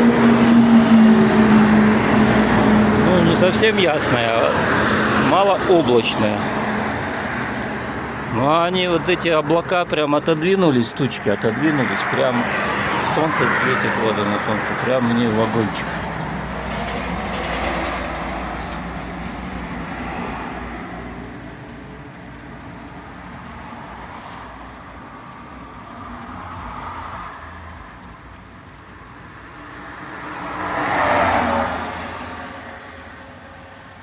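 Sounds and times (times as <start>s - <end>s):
road vehicles passing: 0.0s - 34.0s.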